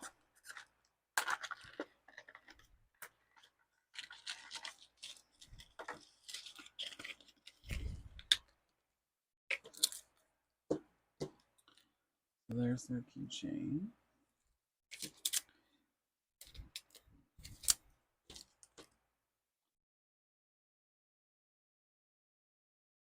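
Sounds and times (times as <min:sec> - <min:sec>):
plastic packaging crinkling: 0:00.0 - 0:08.6, 0:16.4 - 0:18.9.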